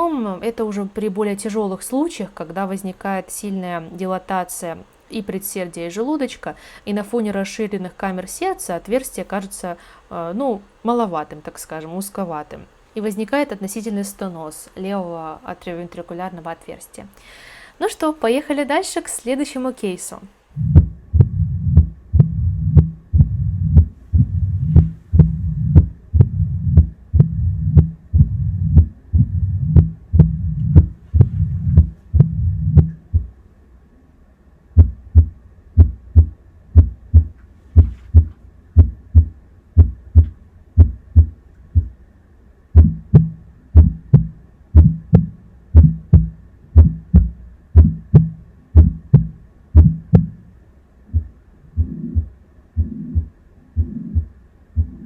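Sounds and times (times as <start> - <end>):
heartbeats: 20.6 - 33.4, 34.8 - 42.1, 42.8 - 50.4, 51.1 - 55.0
low heart murmur: 20.6 - 33.4, 34.8 - 42.0, 42.8 - 50.4, 51.1 - 55.0.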